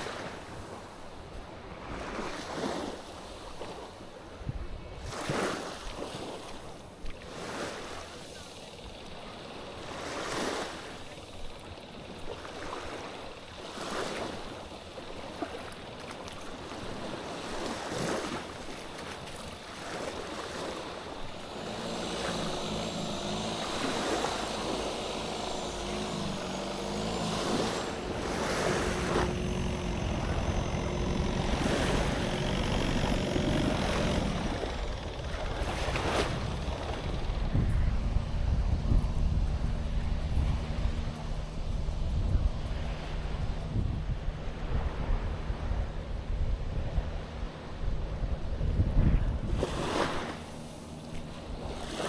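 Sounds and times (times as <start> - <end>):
waves washing ashore: 0.0 - 52.0
engine running: 2.9 - 52.0
wind on microphone: 20.4 - 52.0.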